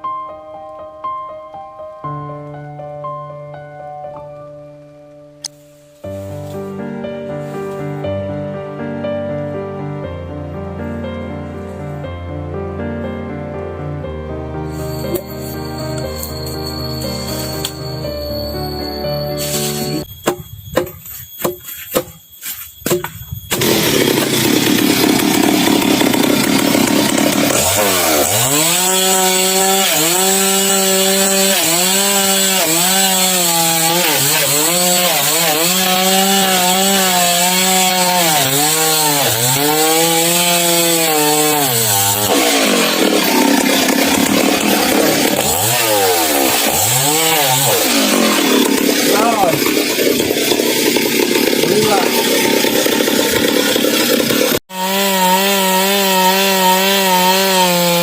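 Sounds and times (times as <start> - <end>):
sharp knocks: 20.2 - 22.2, 22.8 - 23.3
chainsaw cutting log: 22.9 - 58.0.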